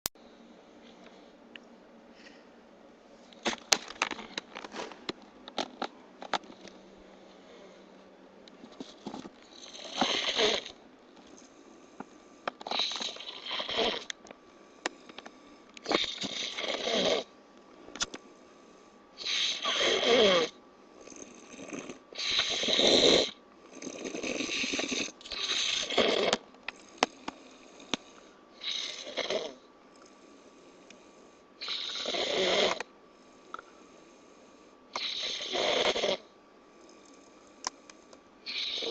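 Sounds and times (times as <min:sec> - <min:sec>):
man snoring loudly: 0:09.6 - 0:10.7, 0:12.7 - 0:14.1, 0:15.9 - 0:17.3, 0:19.2 - 0:26.4, 0:28.6 - 0:29.6, 0:31.6 - 0:32.9, 0:35.0 - 0:36.2, 0:38.5 - 0:38.9.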